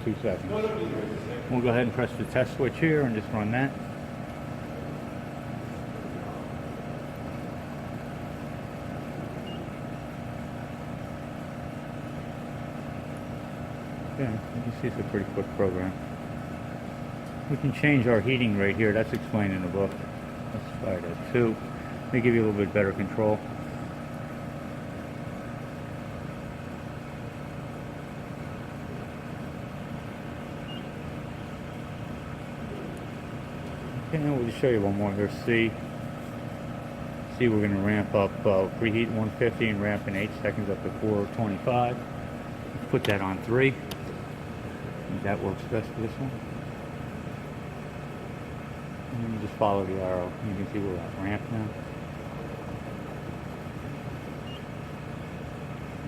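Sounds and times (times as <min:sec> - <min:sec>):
power supply electrical hum: 0:00.0 - 0:56.0.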